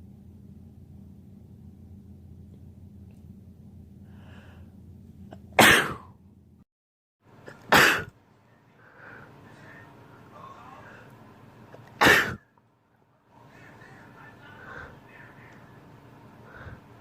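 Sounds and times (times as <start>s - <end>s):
person sneezing: 5.6s - 6.1s, 7.5s - 8.1s, 12.0s - 12.4s
short in-breath: 16.4s - 16.9s.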